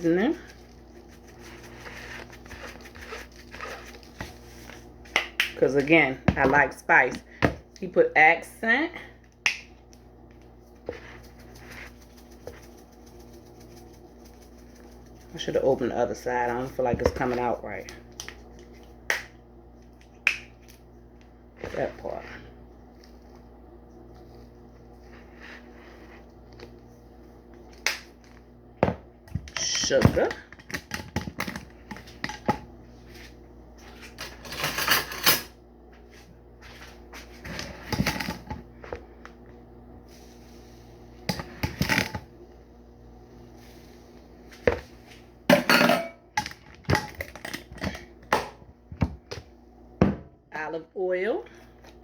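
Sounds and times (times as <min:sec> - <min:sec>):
low electrical hum: 0:00.0 - 0:52.0
seasoning containers shaking: 0:11.0 - 0:15.6.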